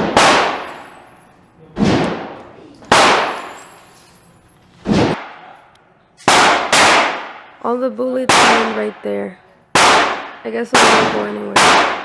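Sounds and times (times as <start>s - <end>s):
gunshots with echo: 0.0s - 0.9s, 1.8s - 3.6s, 4.8s - 5.6s, 6.2s - 7.5s, 8.3s - 9.0s, 9.8s - 12.0s.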